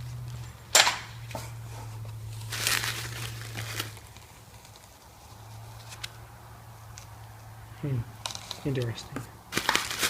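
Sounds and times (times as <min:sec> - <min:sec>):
packaging rustling and crinkling: 0:02.1 - 0:06.1, 0:09.5 - 0:10.0.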